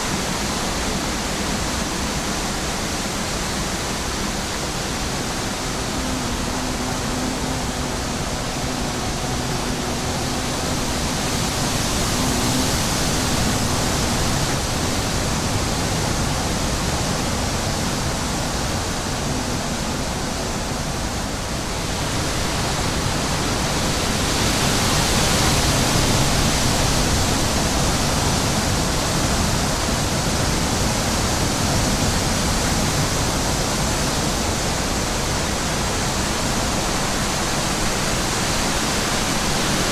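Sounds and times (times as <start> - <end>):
wind buffeting microphone: 0.0 - 39.9
bee buzzing: 3.6 - 15.4.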